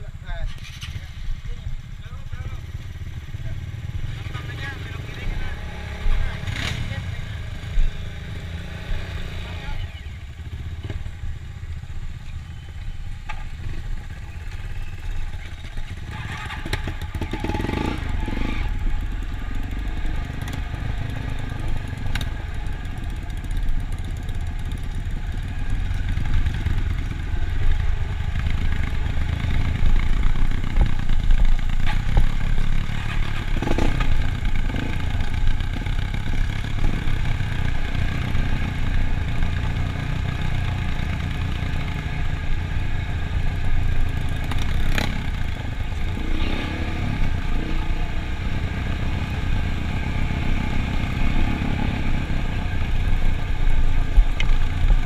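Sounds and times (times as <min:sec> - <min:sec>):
vehicle engine rumble: 0:00.0 - 0:55.0.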